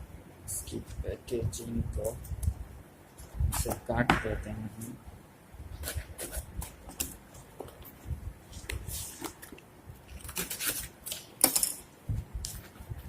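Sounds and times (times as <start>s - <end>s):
packaging clicks and scrapes: 8.9s - 11.8s.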